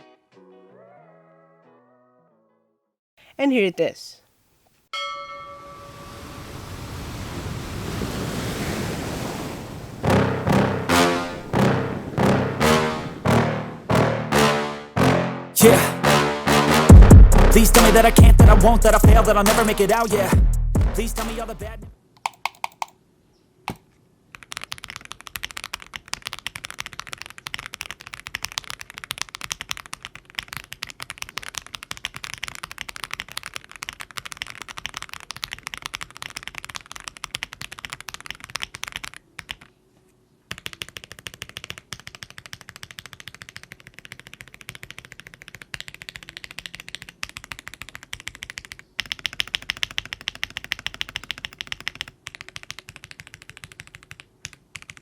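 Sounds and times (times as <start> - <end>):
keyboard keystroke clacks: 22.2 - 23.0, 23.7 - 39.7, 40.5 - 55.0.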